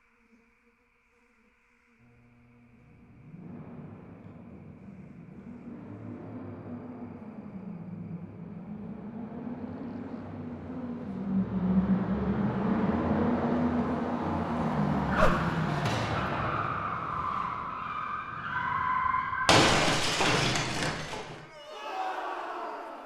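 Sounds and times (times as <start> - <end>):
long high tire screech: 15.0 - 19.5
loud bang: 19.5 - 21.6.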